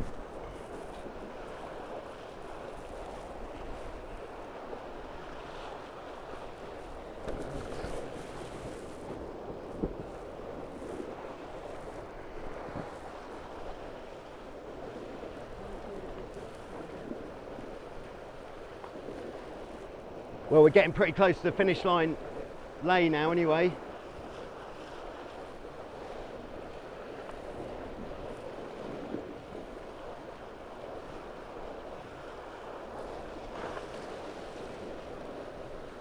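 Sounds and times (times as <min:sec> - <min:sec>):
water rushing past hulls: 0:00.0 - 0:36.0.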